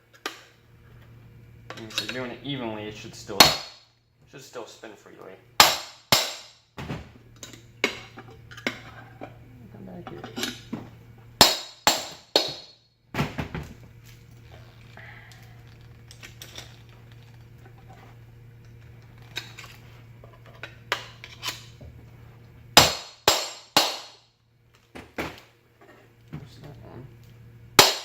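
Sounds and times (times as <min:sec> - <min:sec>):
low steady hum: 0:00.0 - 0:28.0
metal-on-metal whacks: 0:05.6 - 0:06.5, 0:22.8 - 0:24.2, 0:27.8 - 0:28.0.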